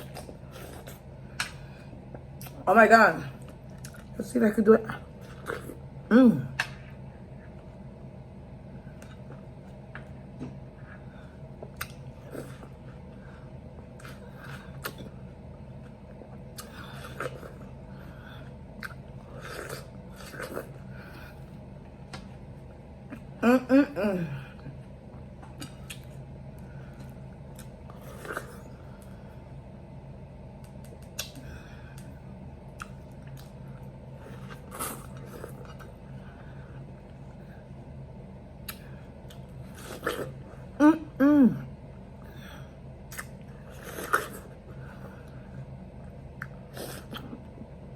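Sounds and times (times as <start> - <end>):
person chewing juicy fruit: 0.0 - 2.6, 3.4 - 4.2, 8.9 - 21.7, 24.5 - 29.4, 30.5 - 37.8, 38.6 - 41.1, 42.3 - 47.8
steady low hum: 0.0 - 47.9.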